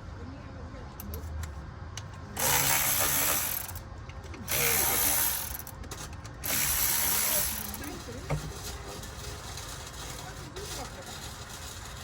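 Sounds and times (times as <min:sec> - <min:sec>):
power ratchet spinning: 0:02.4 - 0:12.0.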